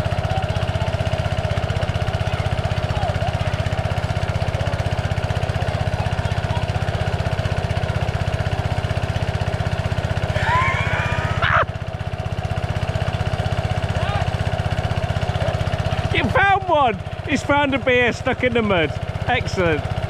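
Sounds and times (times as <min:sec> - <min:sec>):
water pump engine running: 0:00.0 - 0:20.0.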